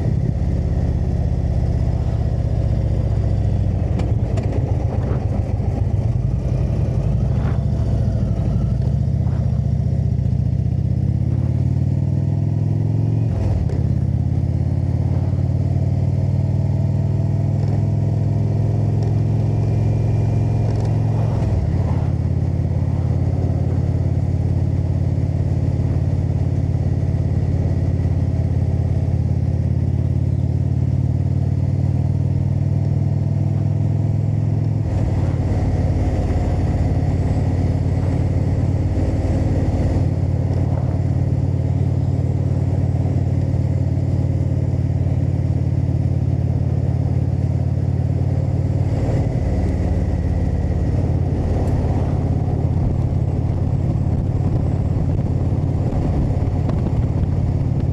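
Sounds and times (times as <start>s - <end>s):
motorcycle engine running: 0.0s - 57.9s.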